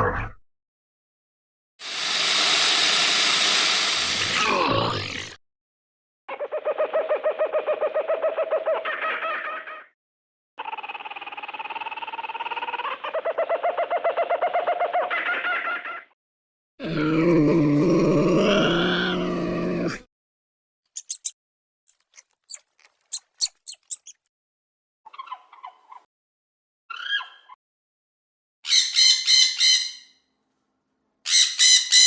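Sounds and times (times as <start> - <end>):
stuttering animal call: 3.8 - 5.4, 16.8 - 20.0
low growling animal call: 4.1 - 5.4, 16.8 - 20.1
sharp high chirps: 21.0 - 21.3, 22.5 - 24.2.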